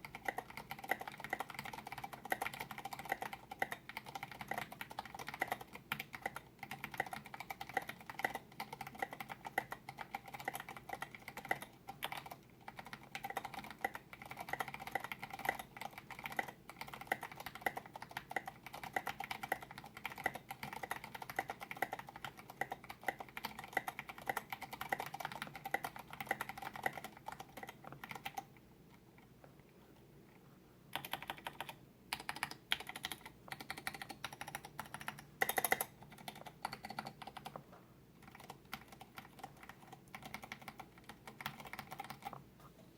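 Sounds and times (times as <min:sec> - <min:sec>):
fast typing on mechanical keyboard: 0:00.0 - 0:28.5, 0:31.0 - 0:37.6, 0:38.2 - 0:42.4.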